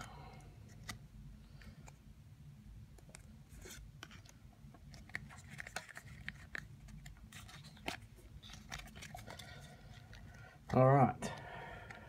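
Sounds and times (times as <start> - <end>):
trading cards rustling: 3.0 - 10.8.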